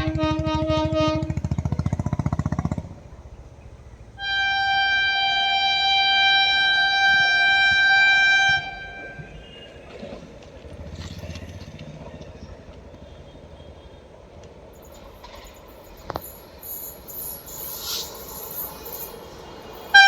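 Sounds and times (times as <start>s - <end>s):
locomotive horn blast: 0.0s - 1.6s, 4.2s - 10.2s, 19.7s - 20.0s.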